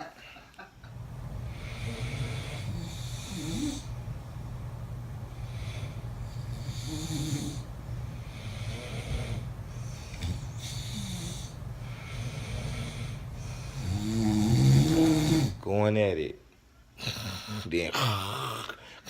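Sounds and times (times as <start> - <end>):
men snoring: 1.4 - 4.0, 5.4 - 15.6, 17.0 - 19.0.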